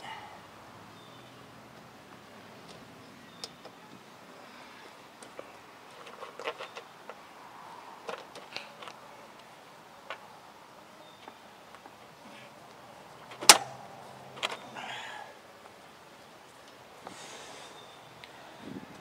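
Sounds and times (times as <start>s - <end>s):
hand tools and metal parts clicking: 5.2s - 7.2s, 13.3s - 15.0s.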